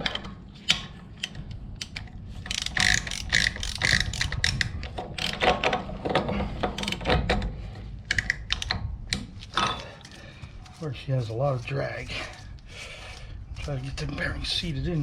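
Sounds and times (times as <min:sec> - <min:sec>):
ratchet wrench clicking: 0:01.2 - 0:05.4.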